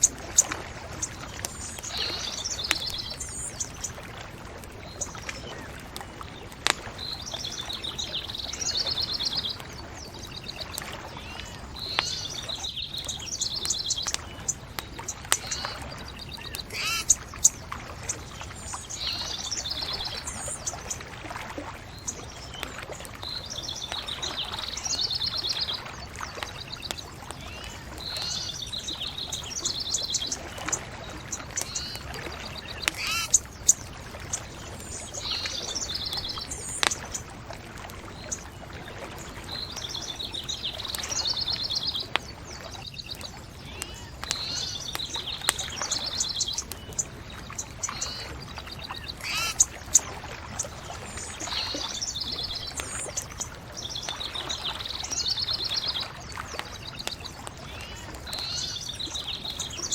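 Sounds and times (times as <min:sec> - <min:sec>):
songbird trilling: 0:00.0 - 0:04.0, 0:07.0 - 0:20.9, 0:26.4 - 0:37.3, 0:39.5 - 0:56.2, 0:56.8 - 0:59.9
bonfire crackling pops: 0:00.0 - 0:18.9, 0:25.7 - 0:47.9, 0:56.2 - 0:59.7.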